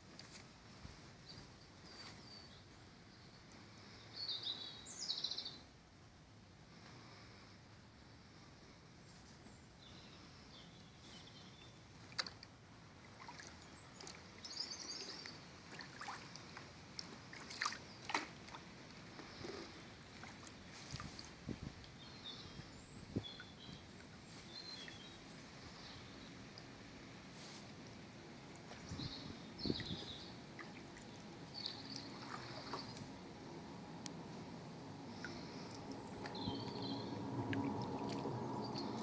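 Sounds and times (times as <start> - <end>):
water sloshing and dripping: 12.0 - 39.0
small birds chirping: 13.2 - 16.6, 19.1 - 26.8, 28.5 - 33.2, 35.1 - 37.2.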